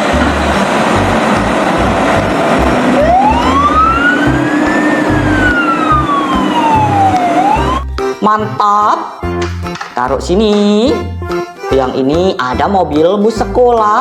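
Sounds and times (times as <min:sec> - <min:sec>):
steady rushing noise: 0:00.0 - 0:07.8
low thumps: 0:00.0 - 0:08.1
siren wailing: 0:00.3 - 0:08.0.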